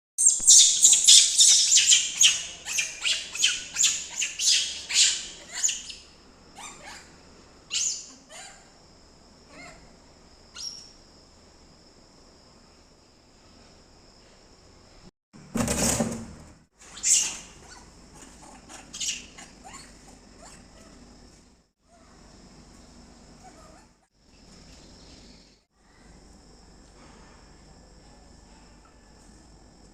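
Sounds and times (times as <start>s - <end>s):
monkey calling: 0.2s - 6.0s.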